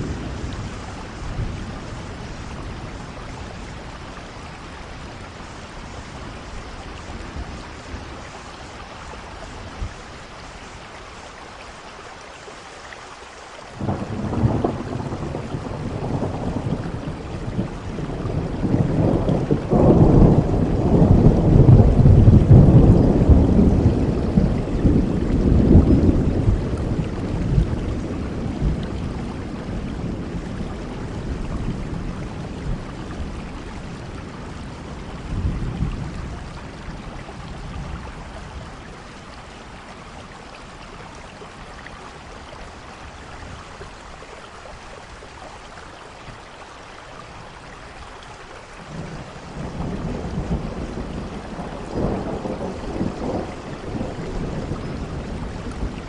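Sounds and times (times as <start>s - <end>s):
thunder rumbling: 0.0s - 8.8s, 13.8s - 39.8s, 48.8s - 56.0s
steady rain: 0.0s - 56.0s.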